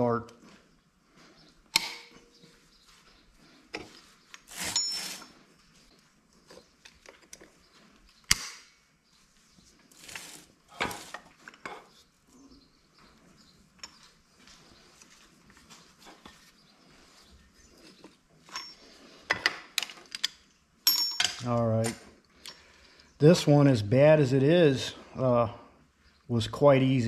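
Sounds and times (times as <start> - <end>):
metal tools clinking and scraping: 3.7 - 5.4, 17.3 - 22.6.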